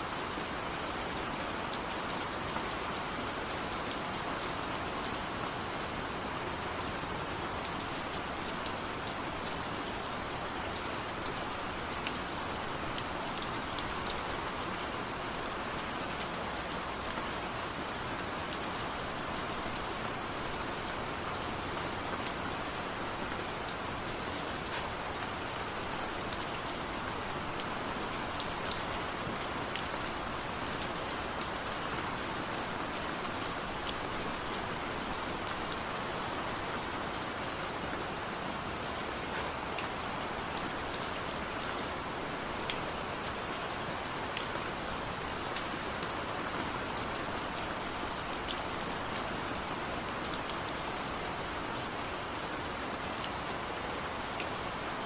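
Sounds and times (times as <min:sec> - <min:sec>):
steady rain hiss: 0:00.0 - 0:55.0.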